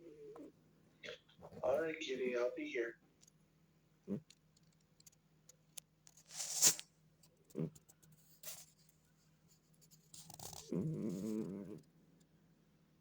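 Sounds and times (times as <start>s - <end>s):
cat snoring: 0.0s - 0.5s, 7.5s - 7.8s, 10.2s - 11.9s.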